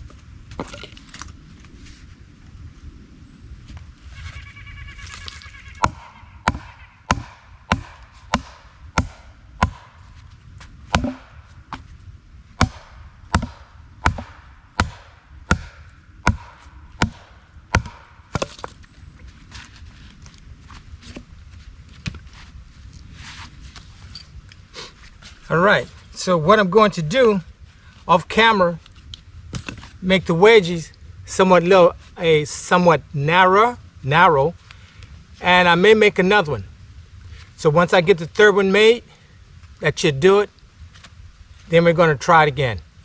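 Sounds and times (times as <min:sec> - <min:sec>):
hammer blows on wooden wedges: 0:05.8 - 0:10.0, 0:10.9 - 0:11.8.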